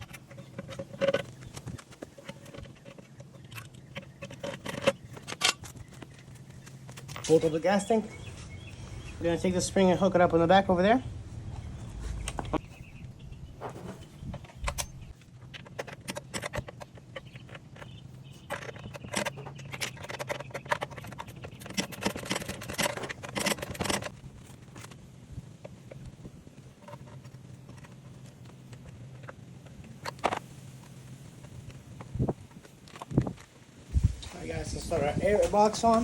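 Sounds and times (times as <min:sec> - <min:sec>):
metal tools clinking: 0:00.0 - 0:08.0
steady low hum: 0:00.0 - 0:36.0.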